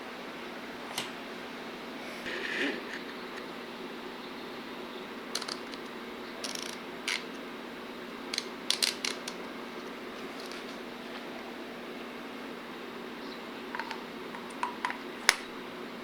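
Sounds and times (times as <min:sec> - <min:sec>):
steady low hum: 0:00.0 - 0:16.0
mechanical clicks and rattles: 0:05.3 - 0:07.4, 0:08.3 - 0:09.5.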